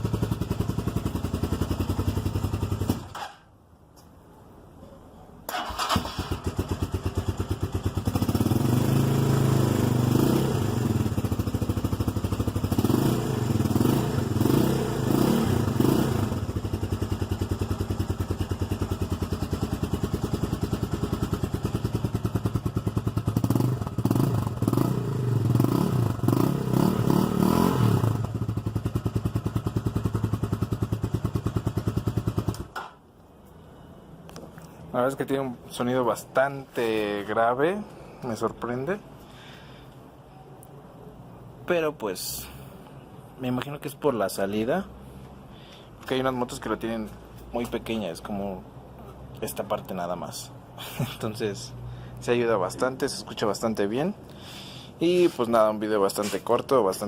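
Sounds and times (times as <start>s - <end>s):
motorcycle engine idling and revving: 0.0s - 3.5s, 5.6s - 33.0s.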